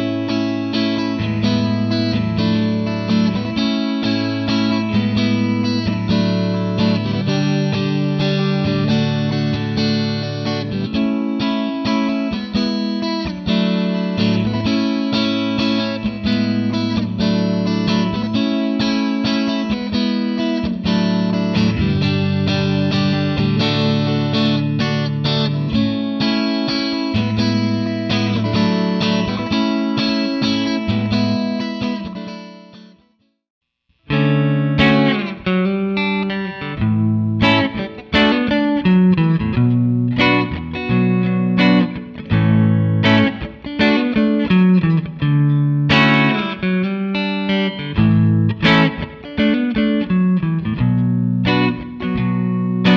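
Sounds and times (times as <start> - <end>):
clean electric guitar chords: 0.0 - 33.0, 34.0 - 52.9.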